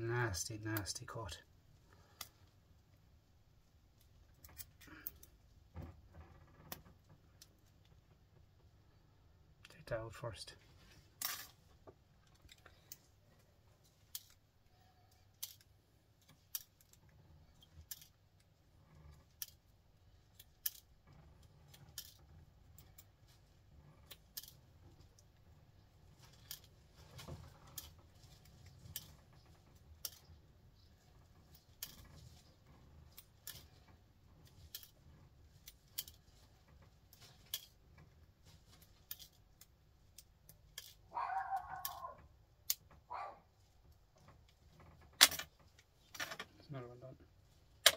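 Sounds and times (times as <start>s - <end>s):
small sharp clicks and snips: 1.9s - 2.5s, 19.2s - 19.7s, 20.3s - 20.9s, 38.6s - 43.0s.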